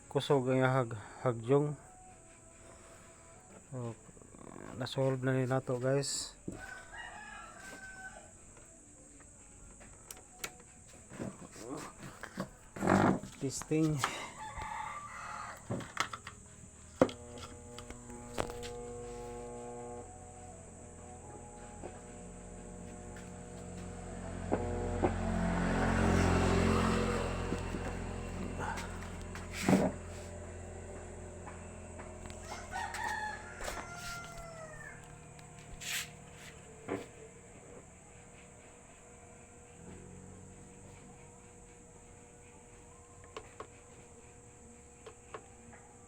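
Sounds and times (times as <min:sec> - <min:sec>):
rooster crowing: 0:06.5 - 0:08.5, 0:13.8 - 0:16.0, 0:17.2 - 0:37.3
buzzing tone from speaker: 0:08.1 - 0:46.0
low steady hum: 0:12.6 - 0:46.0.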